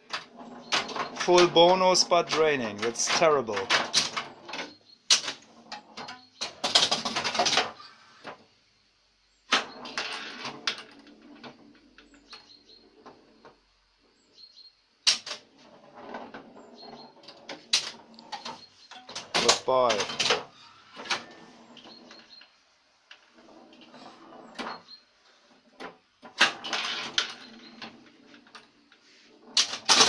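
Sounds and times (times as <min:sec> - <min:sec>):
pinball machine relays clattering: 0:00.1 - 0:07.8, 0:17.3 - 0:22.3, 0:25.8 - 0:28.6, 0:29.5 - 0:30.0.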